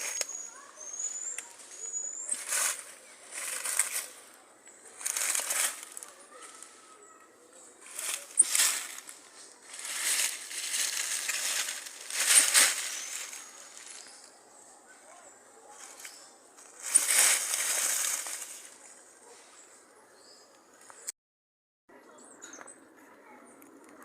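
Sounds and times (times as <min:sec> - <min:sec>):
rustling bursts: 0:01.6 - 0:04.2, 0:05.0 - 0:06.8, 0:07.8 - 0:14.3, 0:16.8 - 0:18.8.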